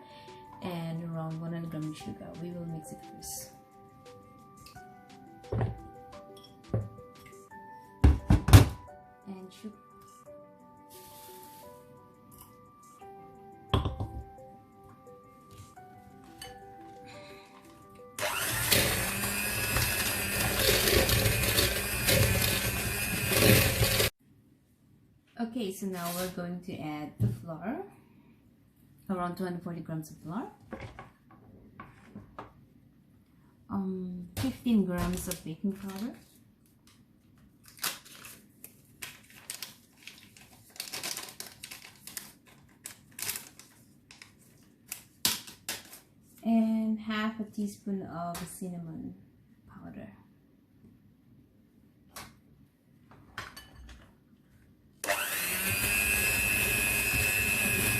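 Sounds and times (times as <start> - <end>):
electric mixer running: 18.2 - 24.1, 55.0 - 57.9.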